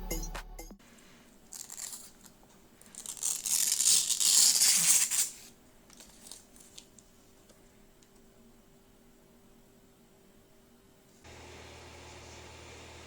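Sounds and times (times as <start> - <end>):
packaging rustling and tearing: 1.5 - 7.0.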